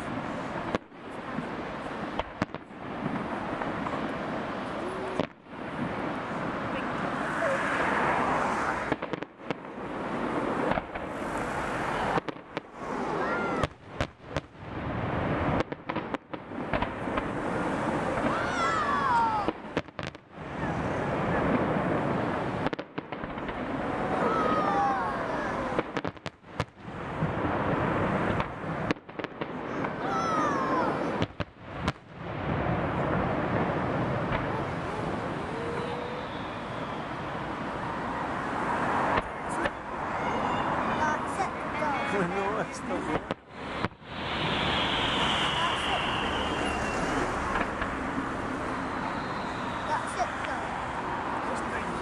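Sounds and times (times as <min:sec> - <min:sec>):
constant rushing noise: 0:00.0 - 0:26.0, 0:32.6 - 0:52.0
fireworks bangs and crackles: 0:00.0 - 0:52.0
falling meow-like tone: 0:24.2 - 0:25.8, 0:30.0 - 0:31.1.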